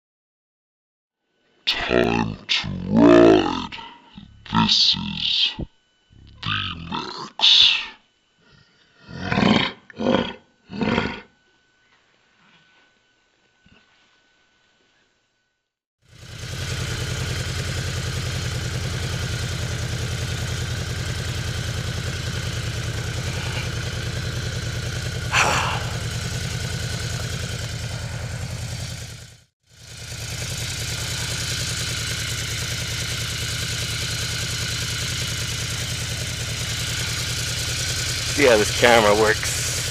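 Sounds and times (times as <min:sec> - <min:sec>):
motorcycle engine running: 0:16.0 - 0:39.9.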